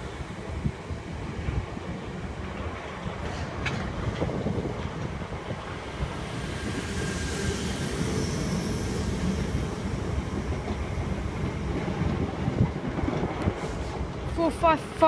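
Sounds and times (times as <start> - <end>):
train wheels rumbling: 0.0 - 15.0
faint high whine: 5.8 - 11.4.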